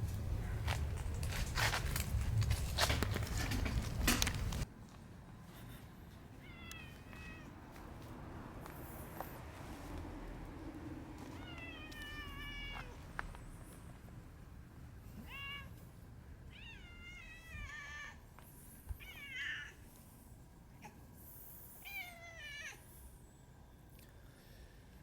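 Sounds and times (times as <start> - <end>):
cats meowing: 6.3 - 7.6, 11.2 - 13.0, 15.0 - 15.9, 16.5 - 18.2, 18.9 - 19.8, 21.8 - 22.8.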